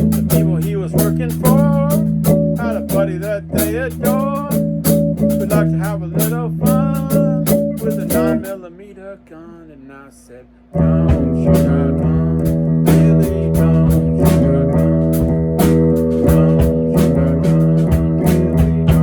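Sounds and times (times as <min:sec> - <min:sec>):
guitar and bass band music: 0:00.0 - 0:08.7, 0:10.7 - 0:19.0
person singing: 0:00.0 - 0:19.0.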